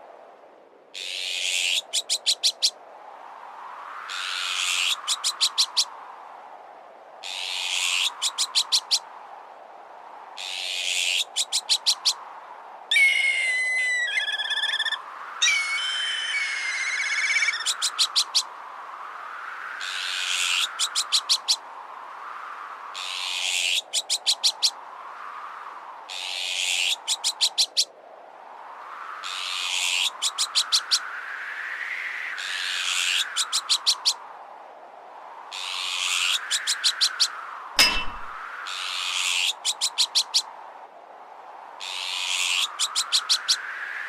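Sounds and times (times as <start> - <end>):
harsh bird calls: 12.9 - 18.5
whooshing wind: 33.2 - 44.0.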